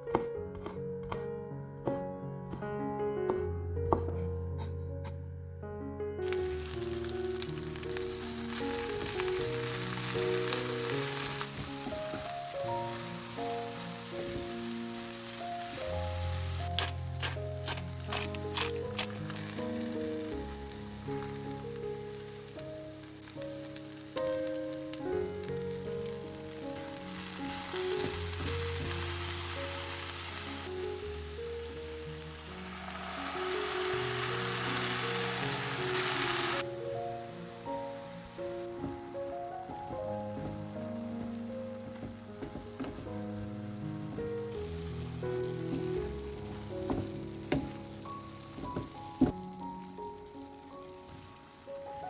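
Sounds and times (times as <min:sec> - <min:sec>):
background music: 0:00.0 - 0:52.0
food sizzling in oil: 0:06.2 - 0:36.6.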